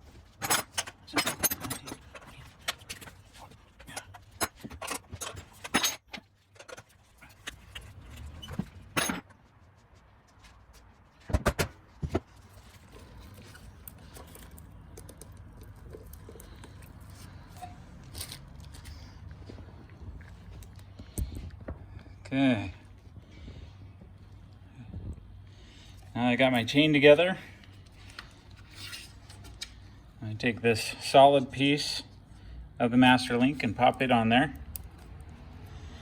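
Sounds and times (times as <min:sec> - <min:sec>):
metal chain clinking and rattling: 0:00.4 - 0:03.2, 0:03.8 - 0:07.8.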